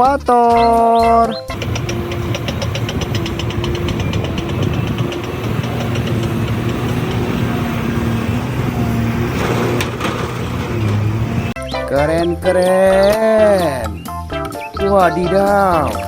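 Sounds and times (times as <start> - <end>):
engine idling with knocking tick: 1.5 - 11.6.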